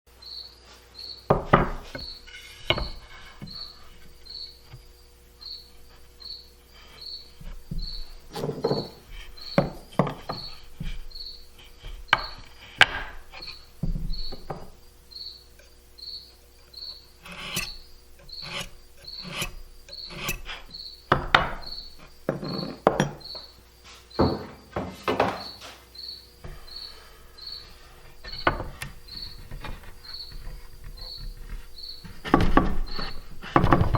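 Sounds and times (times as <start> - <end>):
cricket chirping: 0.2 - 33.9
wooden boards knocking: 1.3 - 4.8, 7.3 - 14.8, 21.1 - 23.5, 24.2 - 25.6, 28.2 - 33.9.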